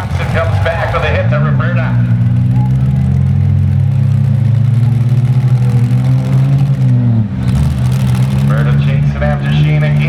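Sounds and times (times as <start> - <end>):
vehicle engines droning: 0.0 - 10.0.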